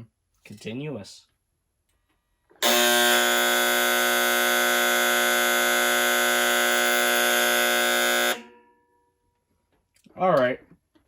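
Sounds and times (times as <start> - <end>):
heater safety buzzer tone: 2.6 - 8.5.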